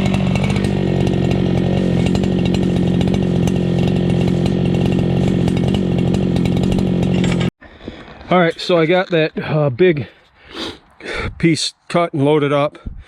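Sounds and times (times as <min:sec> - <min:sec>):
chainsaw engine idling: 0:00.0 - 0:07.5.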